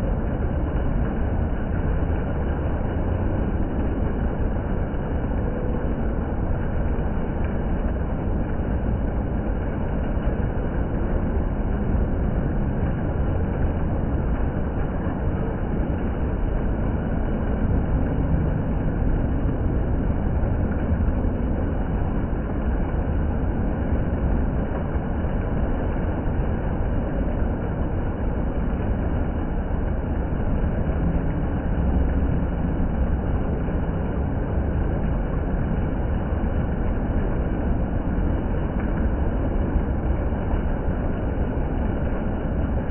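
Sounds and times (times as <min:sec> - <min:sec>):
indoor water fountain splashing: 0:00.0 - 0:42.9.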